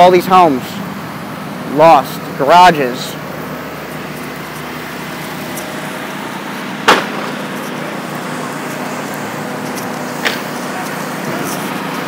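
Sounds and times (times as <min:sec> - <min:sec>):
engine hum: 0:00.0 - 0:12.0
street noise: 0:00.0 - 0:12.0
sharp loud knock: 0:06.8 - 0:07.4.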